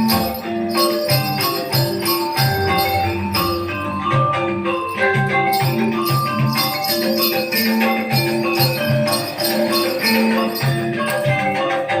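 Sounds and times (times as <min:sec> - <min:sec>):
drum strokes: 0:00.0 - 0:11.6
bells jingling: 0:00.0 - 0:12.0
metallophones playing repeating notes: 0:00.0 - 0:12.0.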